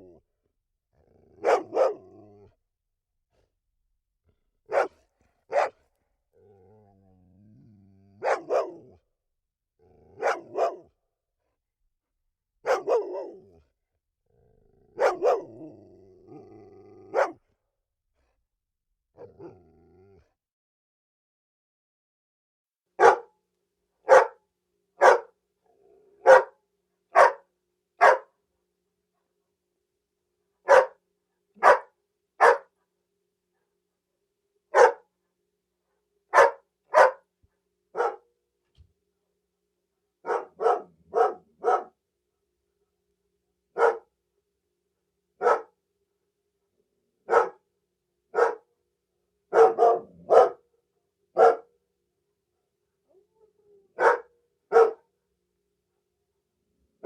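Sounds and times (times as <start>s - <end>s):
cartoon dog barking: 10.2s - 10.8s, 12.7s - 13.3s, 24.1s - 24.4s, 26.2s - 26.5s, 49.5s - 50.6s, 54.0s - 55.0s.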